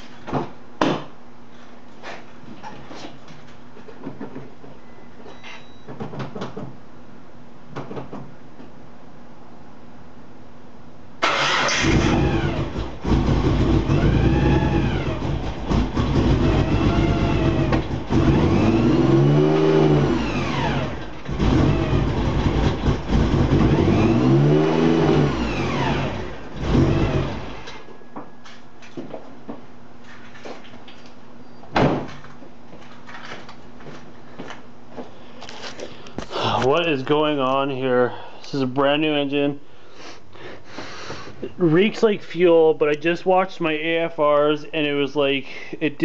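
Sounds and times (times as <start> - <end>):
car engine revving: 11.2 - 27.7.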